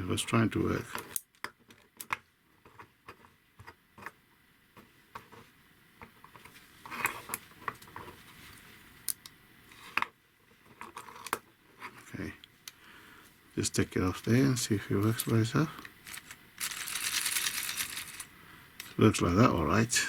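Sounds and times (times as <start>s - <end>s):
plastic parts clicking and tapping: 0.9s - 4.2s, 15.0s - 19.0s.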